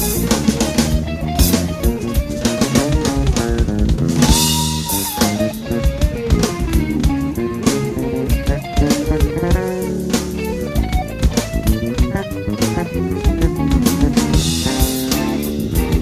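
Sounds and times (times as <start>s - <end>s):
busy drumming: 0.0s - 16.0s
plucked electric bass: 0.0s - 16.0s
cymbal crash: 4.2s - 5.7s.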